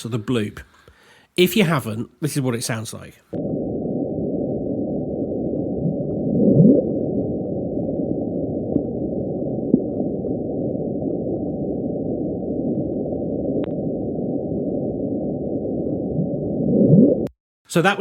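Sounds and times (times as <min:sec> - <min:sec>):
low rumble of ocean noise: 0:03.3 - 0:17.3.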